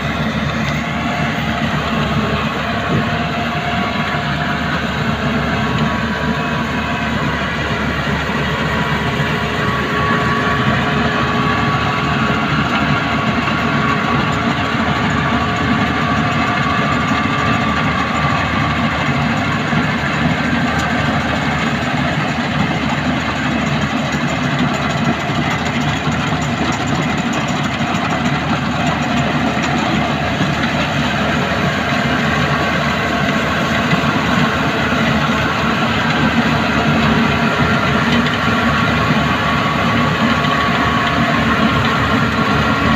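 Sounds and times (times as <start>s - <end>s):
combine harvester running: 0.0s - 42.9s.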